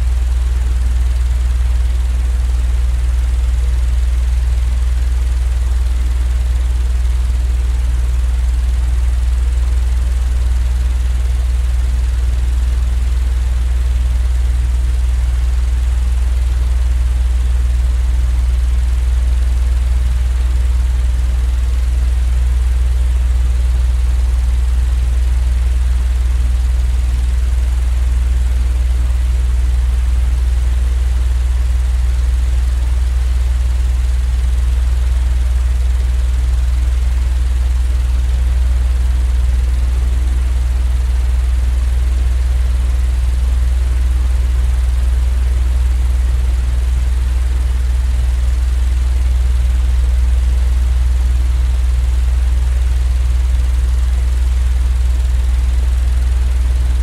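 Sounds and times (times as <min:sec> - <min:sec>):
fan humming: 0:09.0 - 0:11.1, 0:49.2 - 0:50.4.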